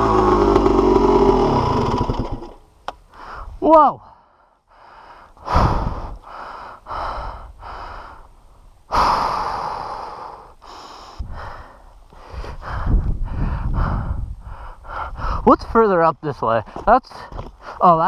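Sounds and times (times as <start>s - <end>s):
person breathing hard: 3.1s - 15.5s.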